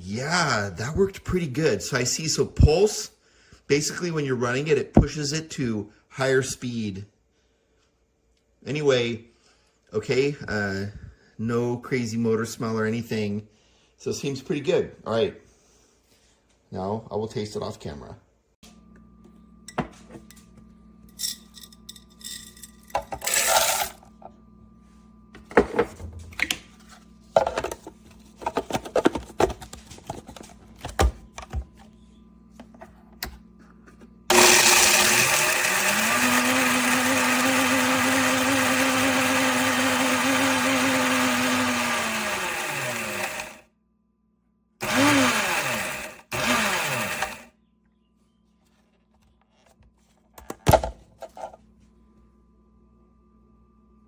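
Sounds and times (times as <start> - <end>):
blender motor running: 23.2 - 24.0, 34.3 - 43.6, 44.8 - 47.5.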